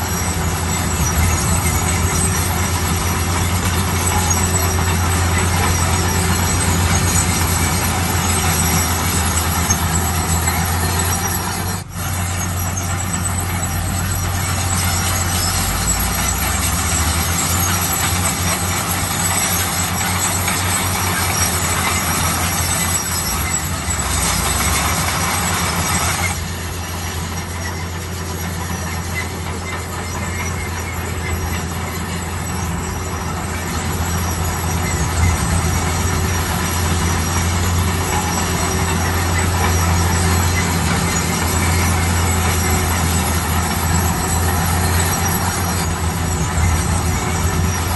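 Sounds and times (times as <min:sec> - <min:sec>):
bulldozer diesel engine droning: 0:00.0 - 0:47.9
machine rattling and grinding: 0:00.0 - 0:47.9.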